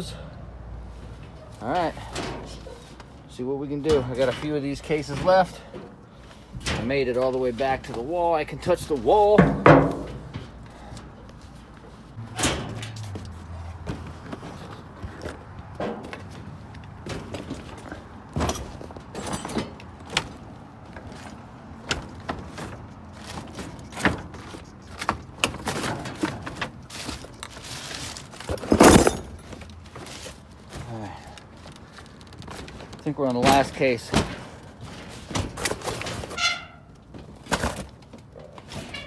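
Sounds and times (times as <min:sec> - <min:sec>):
metal hardware clanking and rattling: 0:01.0 - 0:39.0
heavy bang: 0:09.4 - 0:10.5.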